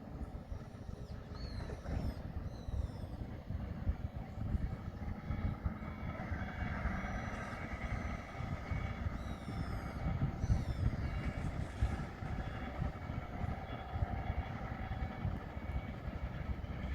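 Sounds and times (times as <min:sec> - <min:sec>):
steady machine whine: 0:00.0 - 0:16.9
diesel engine rumbling: 0:03.6 - 0:16.9.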